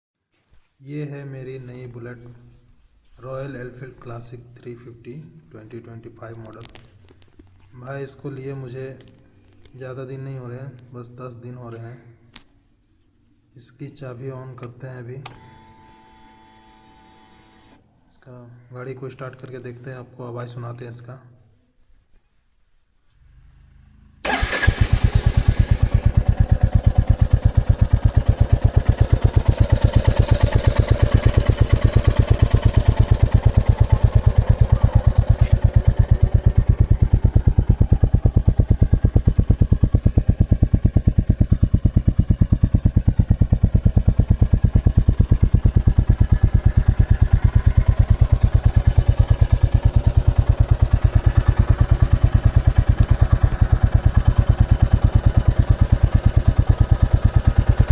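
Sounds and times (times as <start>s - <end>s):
motorcycle engine starting: 15.2s - 17.8s, 23.3s - 57.9s
motorcycle engine idling: 23.7s - 57.9s.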